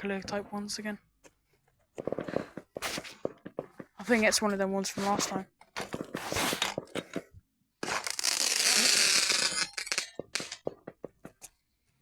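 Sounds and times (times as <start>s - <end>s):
firework crackling and hissing: 7.9s - 9.9s.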